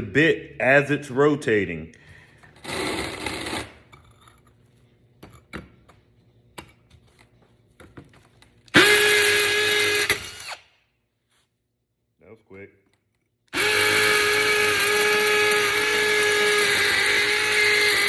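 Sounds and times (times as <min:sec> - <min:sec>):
hammer drill running: 0:08.7 - 0:10.7, 0:13.5 - 0:18.0.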